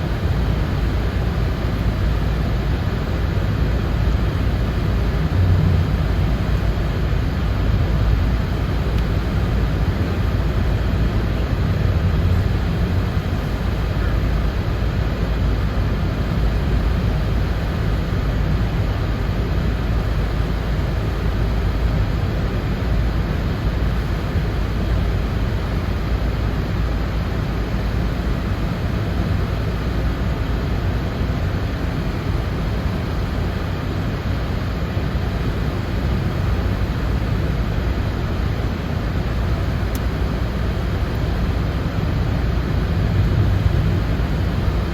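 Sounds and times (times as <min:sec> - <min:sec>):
car road and wind noise: 0:00.0 - 0:44.9.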